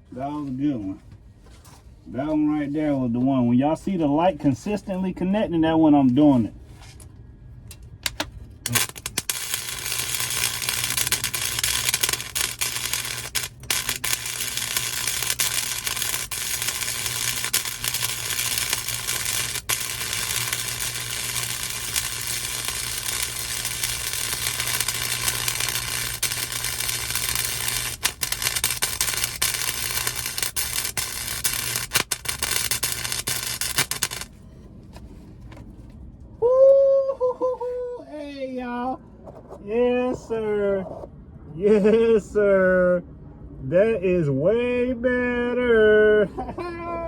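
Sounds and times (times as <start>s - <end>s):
low electrical hum: 0.0s - 47.0s
welding arc crackling: 8.0s - 34.3s.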